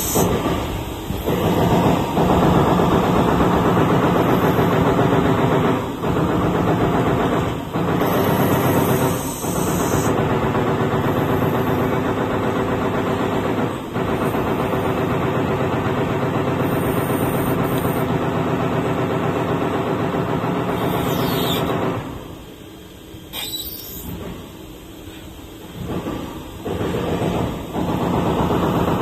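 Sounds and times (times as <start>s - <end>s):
machine rattling: 0.0s - 22.3s.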